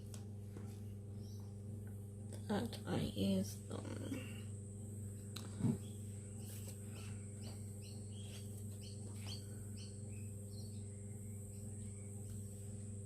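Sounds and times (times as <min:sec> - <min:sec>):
low electrical hum: 0:00.0 - 0:13.0
bird chirping: 0:01.2 - 0:01.6, 0:05.8 - 0:12.2.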